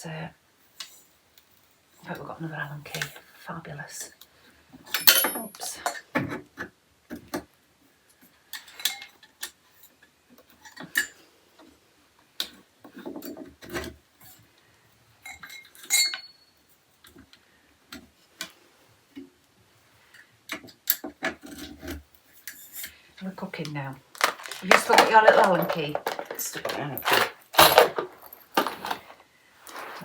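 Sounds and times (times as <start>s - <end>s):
allen keys tapping metal: 4.9s - 5.8s, 24.2s - 29.1s
metal clicks and clinks: 4.9s - 5.8s, 24.2s - 29.1s.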